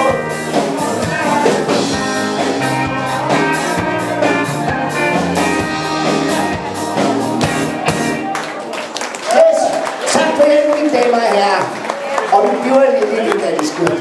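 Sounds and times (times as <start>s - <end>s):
drum beat: 0.0s - 8.3s
electric guitar: 0.0s - 8.7s.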